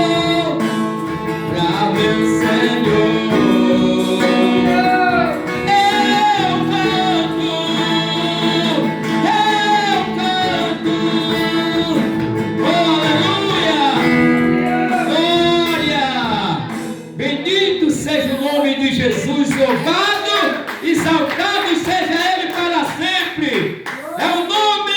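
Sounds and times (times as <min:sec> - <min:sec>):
person singing: 0:00.0 - 0:17.5, 0:24.0 - 0:24.5
acoustic guitar: 0:00.0 - 0:24.9.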